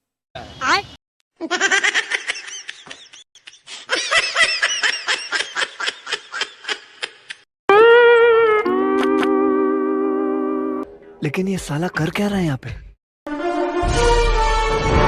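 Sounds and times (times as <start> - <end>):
held musical note: 7.7 - 11.2
high-pitched giggling: 8.6 - 9.4.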